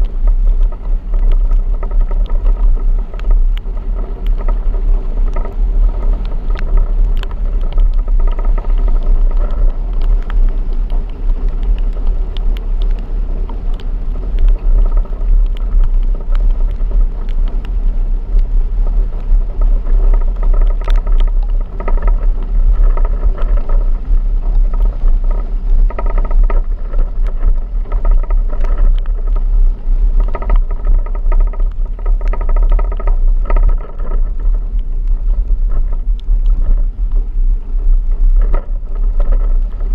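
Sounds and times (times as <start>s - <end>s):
engine and road rumble: 0.0s - 39.9s
sharp ticks of rain: 0.0s - 39.9s.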